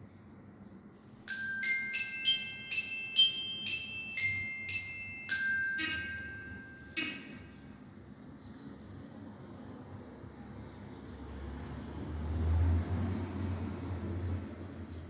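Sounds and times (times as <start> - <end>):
timer alarm chime melody: 1.3 - 7.5.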